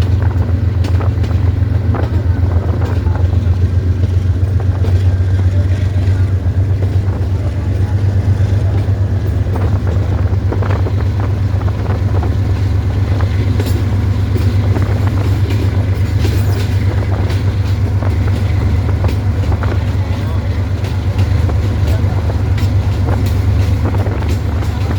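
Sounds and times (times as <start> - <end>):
diesel locomotive engine drone: 0.0 - 24.9.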